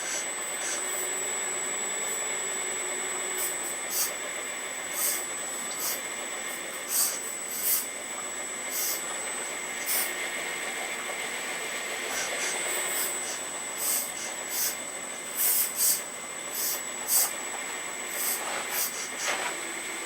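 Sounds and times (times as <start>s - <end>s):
hydraulic valve hisses: 0.0s - 1.2s, 3.3s - 4.2s, 4.9s - 7.9s, 8.7s - 9.0s, 9.8s - 10.2s, 12.1s - 17.3s, 18.1s - 19.4s
hydraulic pump whine: 0.0s - 20.0s.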